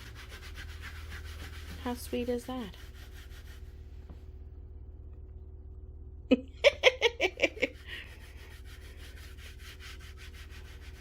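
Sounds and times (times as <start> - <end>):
person giggling: 6.3 - 8.3.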